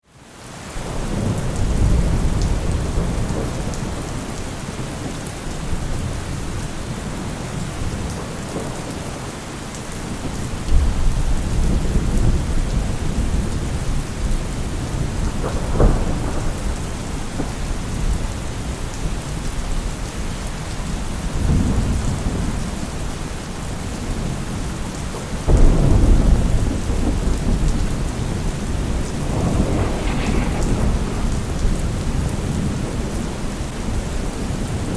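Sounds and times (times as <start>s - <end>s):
steady rain: 0.0s - 34.9s
deep thunder rumbles: 25.5s - 34.9s.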